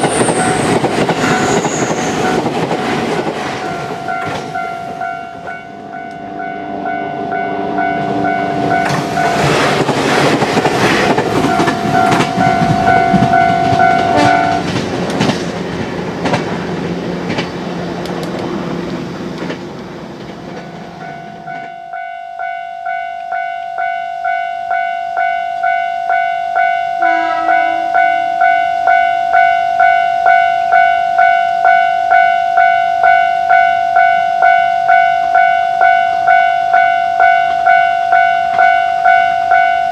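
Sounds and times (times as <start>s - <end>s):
wheels clattering over rail joints: 0.0s - 5.9s, 8.5s - 21.7s
train rushing past: 0.0s - 21.7s, 27.0s - 29.9s
level crossing bell ringing: 11.3s - 14.6s, 22.0s - 30.5s.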